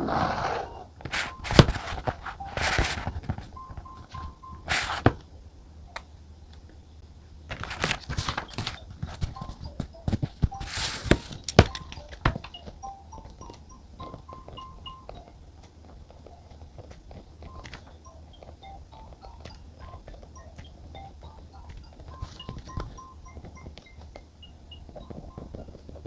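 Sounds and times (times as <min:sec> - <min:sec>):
paper rustling: 0:01.0 - 0:03.5, 0:04.7 - 0:05.2, 0:07.5 - 0:09.5, 0:10.2 - 0:11.8
soft plinking music: 0:01.1 - 0:26.0.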